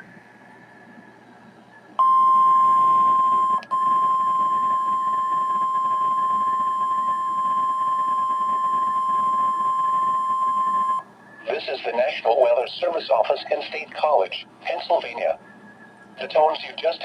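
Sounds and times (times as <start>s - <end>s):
steady single-pitched alarm tone: 2.0s - 11.0s.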